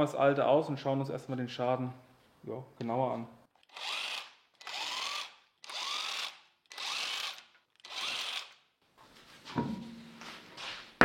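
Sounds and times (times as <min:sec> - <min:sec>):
impact wrench whining: 0:03.6 - 0:08.7.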